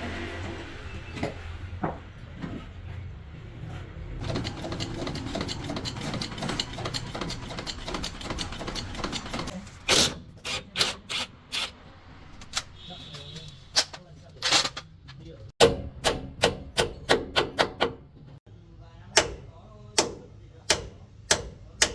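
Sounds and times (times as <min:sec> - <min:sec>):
rapid mechanical clattering: 0:04.2 - 0:09.6.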